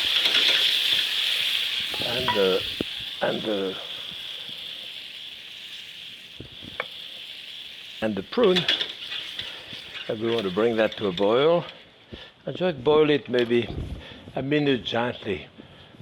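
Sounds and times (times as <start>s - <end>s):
hot pan sizzling: 0.0s - 12.2s.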